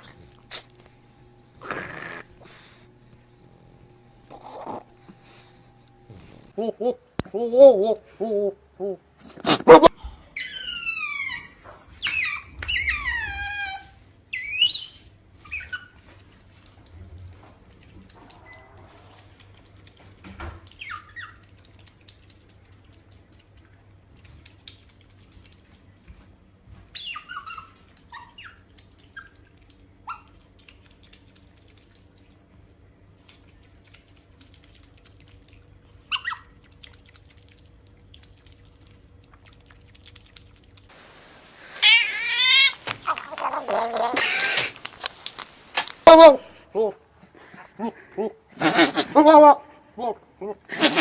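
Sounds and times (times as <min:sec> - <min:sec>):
cat meowing and chirping: 0:41.8 - 0:44.7
cat yowling: 0:41.8 - 0:44.8, 0:48.6 - 0:49.4, 0:50.7 - 0:51.0.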